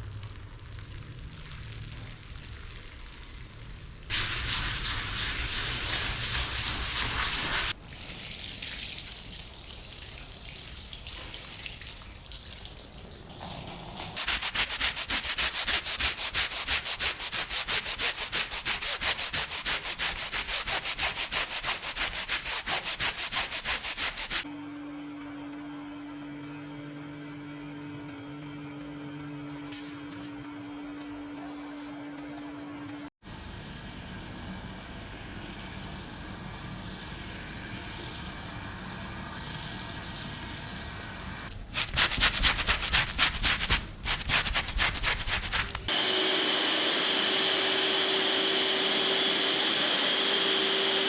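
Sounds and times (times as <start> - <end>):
stiff brush scrubbing rug: 4.1 - 7.8, 13.3 - 24.5, 41.5 - 45.9.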